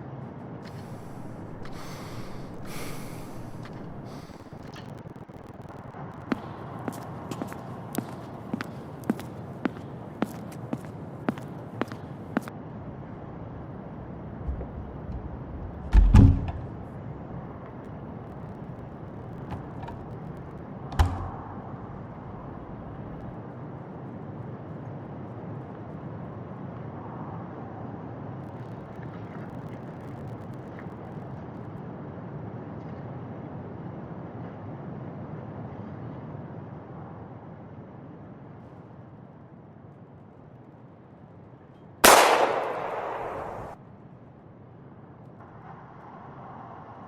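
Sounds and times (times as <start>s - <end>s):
low rumbling background noise: 0.0s - 47.0s
loud heavy thud: 0.7s - 4.7s, 14.5s - 17.0s, 20.9s - 21.6s
sharp knock: 14.5s - 16.7s.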